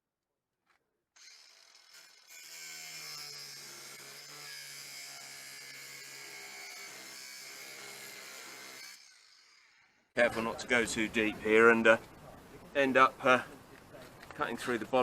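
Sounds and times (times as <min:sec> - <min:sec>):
electric drill drilling into sheet steel: 0:01.2 - 0:10.1.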